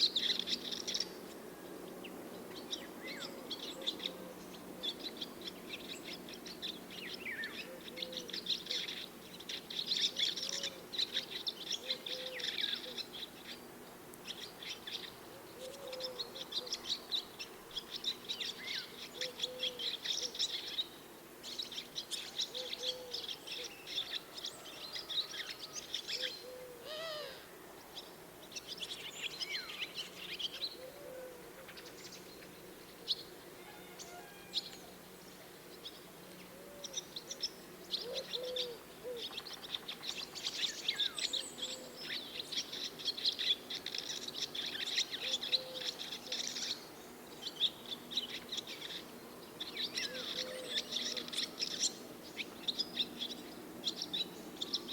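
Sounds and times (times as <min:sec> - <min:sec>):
swallows twittering: 0:02.0 - 0:26.6, 0:34.0 - 0:54.9.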